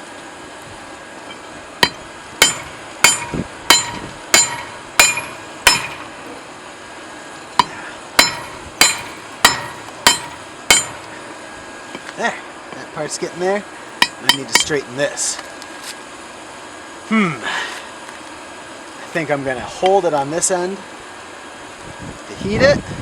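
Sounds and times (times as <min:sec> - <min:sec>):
hammer ringing on hot steel: 0:01.2 - 0:06.6, 0:07.6 - 0:12.1, 0:13.9 - 0:14.8.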